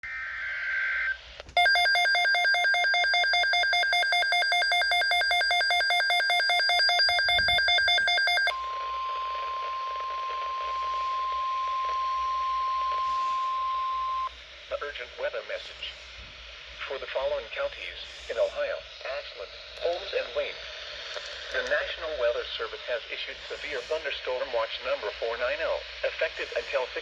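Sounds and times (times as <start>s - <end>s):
pulsing electronic alarm: 1.6s - 14.3s
steady single-pitch alarm tone: 1.6s - 14.3s.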